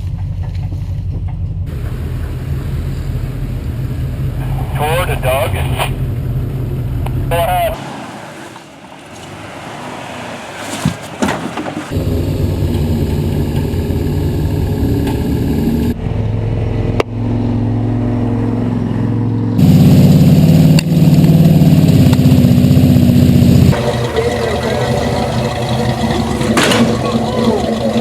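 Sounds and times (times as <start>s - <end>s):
off-road vehicle engines revving: 0.0s - 28.0s
knocks: 8.6s - 12.0s, 23.8s - 27.9s.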